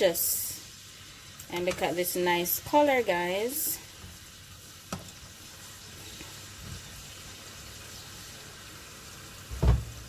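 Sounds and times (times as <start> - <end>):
pot sizzling and bubbling: 0.0 - 10.0
dull thump: 9.5 - 10.0.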